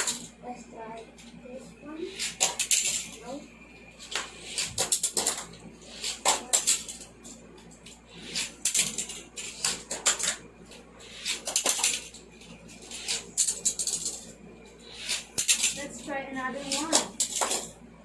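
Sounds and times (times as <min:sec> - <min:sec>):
toy cars clattering on plastic track: 0:02.4 - 0:03.1, 0:06.1 - 0:07.0, 0:08.6 - 0:10.4, 0:11.2 - 0:12.2, 0:15.1 - 0:15.8, 0:16.6 - 0:17.8.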